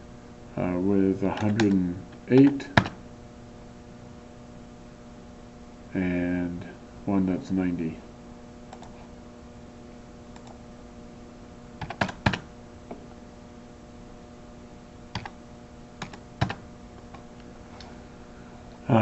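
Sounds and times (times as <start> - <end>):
steady electrical hum: 0.0 - 19.0
computer keyboard keystrokes: 1.4 - 1.8, 8.7 - 9.0, 11.8 - 12.4, 15.2 - 15.4, 16.0 - 17.2.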